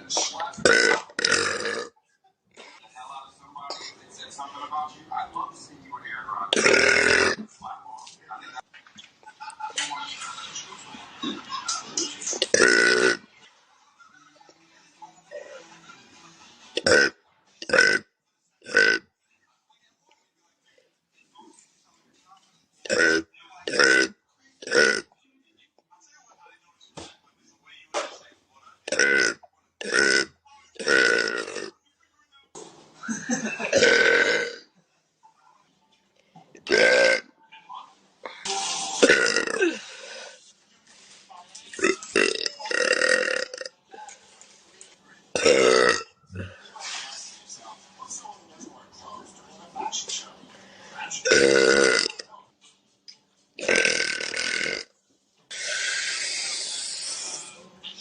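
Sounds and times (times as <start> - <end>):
woman burping: 0.6 - 1.9, 6.6 - 7.5, 12.4 - 13.3, 33.4 - 34.6, 39.0 - 39.8, 41.8 - 43.7, 45.4 - 46.5, 51.2 - 52.2, 53.6 - 54.9.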